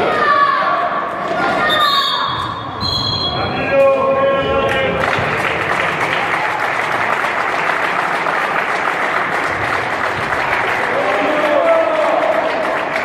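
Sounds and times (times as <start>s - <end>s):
spectators clapping and cheering: 4.4s - 13.0s.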